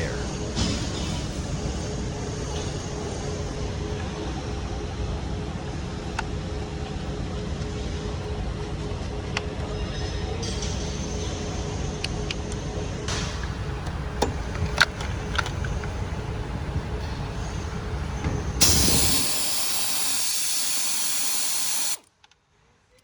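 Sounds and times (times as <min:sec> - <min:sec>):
faint hum: 0:13.1 - 0:22.0
loud steady hiss: 0:13.1 - 0:22.0
sharp clicks: 0:13.2 - 0:22.1.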